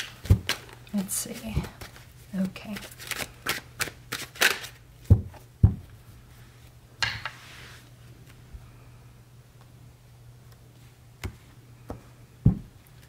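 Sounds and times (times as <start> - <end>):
cards snapping and tapping: 2.7 - 4.8.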